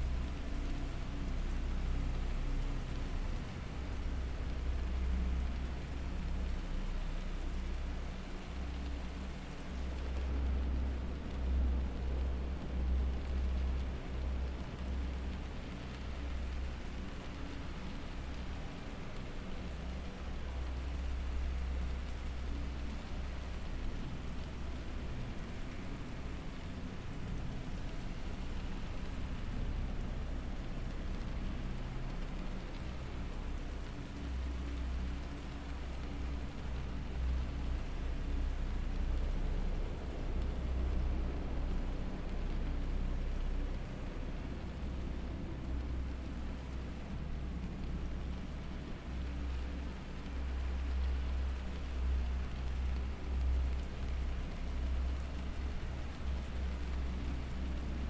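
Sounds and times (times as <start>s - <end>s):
rain-like hiss: 0.0s - 58.0s.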